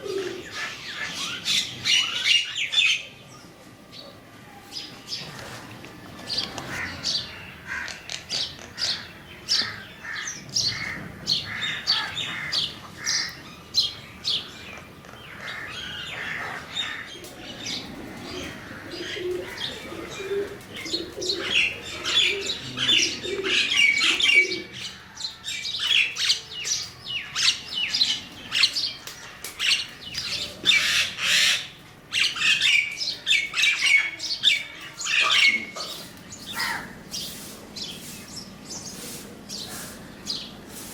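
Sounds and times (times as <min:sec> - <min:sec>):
crows cawing: 0:06.6 - 0:13.4, 0:15.3 - 0:17.2, 0:18.2 - 0:22.3, 0:35.1 - 0:37.0.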